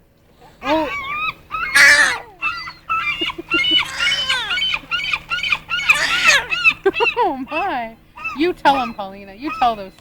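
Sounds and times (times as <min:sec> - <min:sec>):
seagulls squawking: 0:00.4 - 0:09.9.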